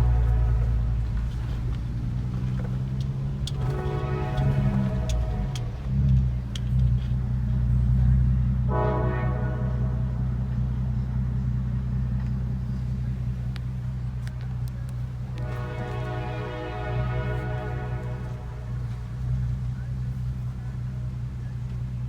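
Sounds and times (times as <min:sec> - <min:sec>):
car horn: 0:00.0 - 0:11.6, 0:15.1 - 0:20.1
car engine running at low revs: 0:00.0 - 0:22.0.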